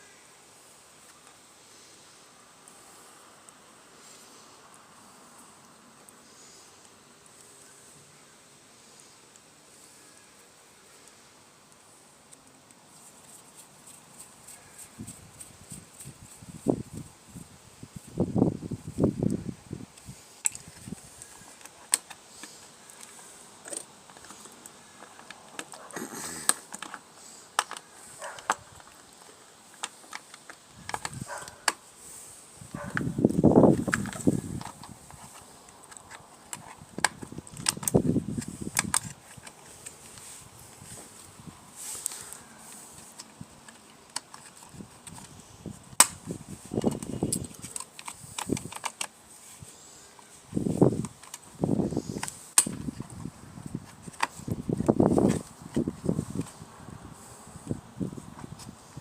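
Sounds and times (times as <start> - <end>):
soft rustling: 12.7 - 19.3, 26.9 - 56.6
tools and parts clicking and rattling: 20.4 - 29.0, 33.8 - 40.2, 46.8 - 49.2, 50.9 - 51.5.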